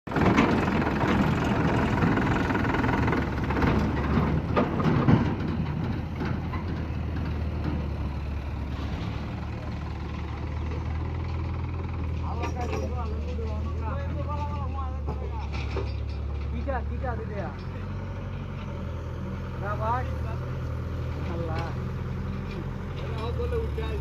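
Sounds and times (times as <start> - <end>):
engine knocks: 0.1 - 18.8
diesel engine running roughly: 0.1 - 24.0.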